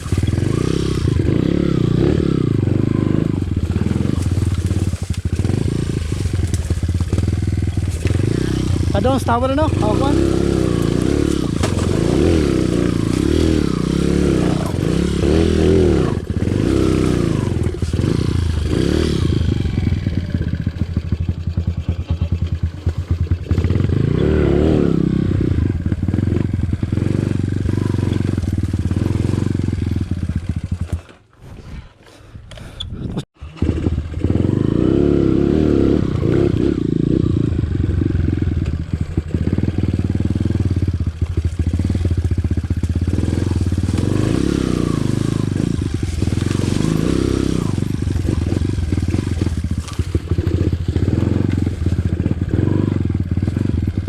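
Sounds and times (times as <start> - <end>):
motorcycle engine revving: 0.0 - 31.4, 33.3 - 54.0.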